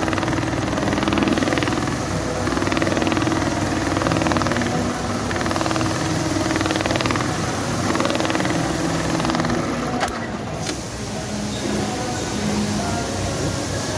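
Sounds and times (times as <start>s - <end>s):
sharp clicks: 0.0s - 10.8s
stitching machine needles: 0.0s - 10.9s
machine hum: 0.0s - 13.4s.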